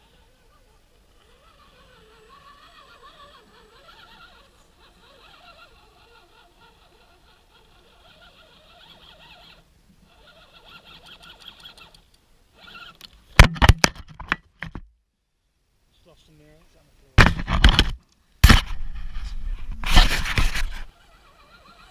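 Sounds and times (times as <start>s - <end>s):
small electric motor whining: 0.0s - 13.2s, 18.7s - 21.9s.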